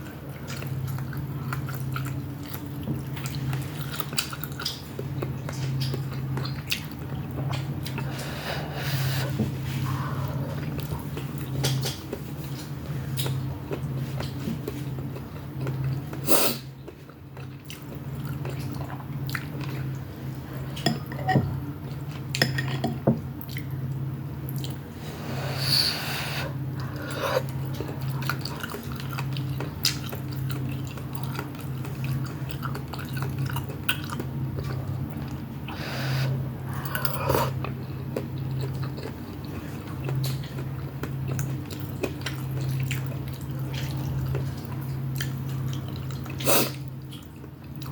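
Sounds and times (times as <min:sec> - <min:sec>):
wet chewing: 0:26.4 - 0:47.9.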